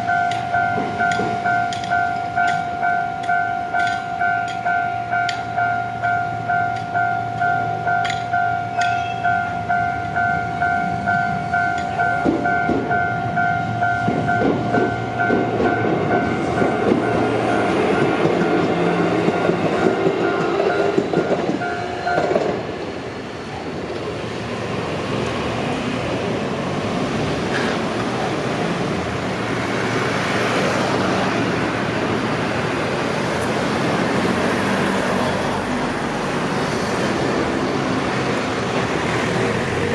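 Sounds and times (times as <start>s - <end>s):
level crossing bell dinging: 0.0s - 16.4s
electric train rumbling past: 0.0s - 39.9s.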